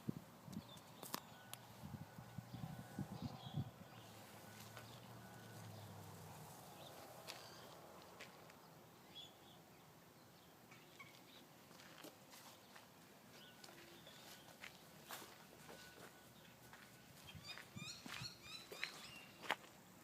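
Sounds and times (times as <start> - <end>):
bird chirping: 2.5 - 6.1, 6.7 - 7.8, 8.6 - 11.5, 15.7 - 19.6.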